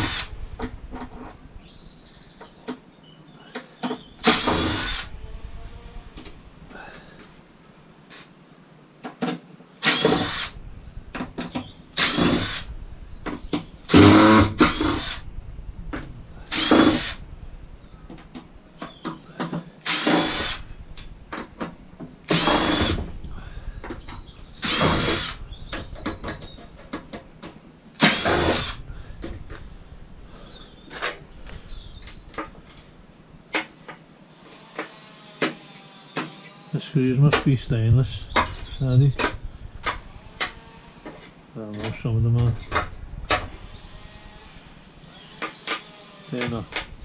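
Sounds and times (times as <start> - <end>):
power drill whirring: 0.0 - 0.4, 4.2 - 5.2, 9.8 - 10.6, 12.0 - 12.7, 13.9 - 15.2, 16.5 - 17.2, 19.8 - 20.7, 22.3 - 23.2, 24.6 - 25.4, 28.0 - 28.8, 43.4 - 46.5.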